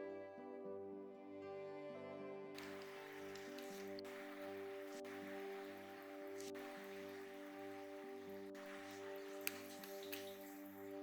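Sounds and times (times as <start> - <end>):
soft instrumental music: 0.0 - 11.0
steady hiss: 2.6 - 11.0.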